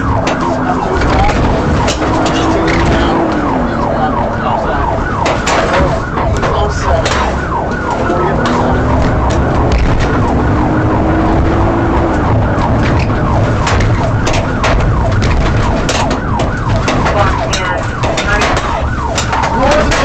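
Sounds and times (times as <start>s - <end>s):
engine and road rumble: 0.0s - 20.0s
police siren: 0.0s - 20.0s
sharp clicks or knocks: 12.6s - 20.0s.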